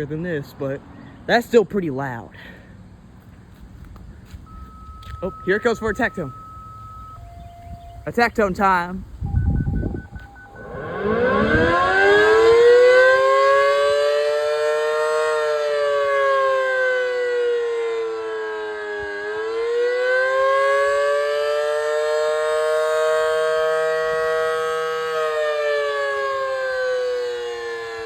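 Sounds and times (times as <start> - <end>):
warning siren wailing: 4.5 - 28.0.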